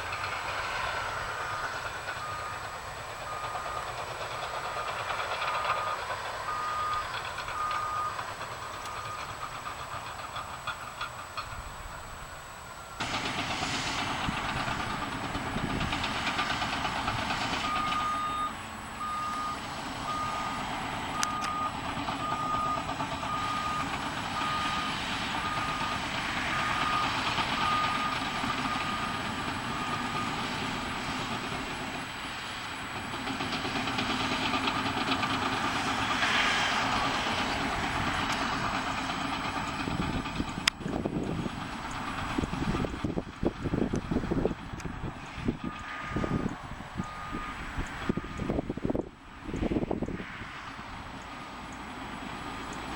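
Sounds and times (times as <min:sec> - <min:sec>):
heavy machinery engine running: 0:00.0 - 0:52.9
reversing alarm beeping: 0:01.3 - 0:09.5, 0:16.3 - 0:31.3, 0:45.5 - 0:49.0.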